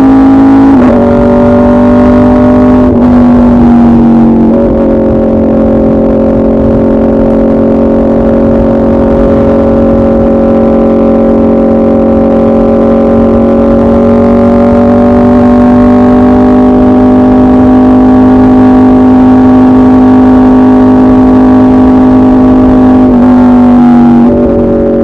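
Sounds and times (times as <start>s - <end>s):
motorcycle engine revving loudly: 0.0s - 25.0s.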